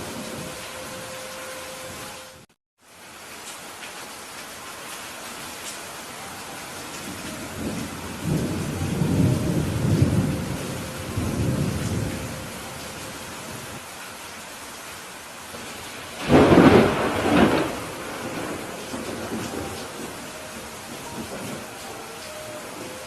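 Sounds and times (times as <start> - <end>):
rain hissing: 0.0 - 23.0
thunder rumble: 6.9 - 13.8, 15.5 - 23.0.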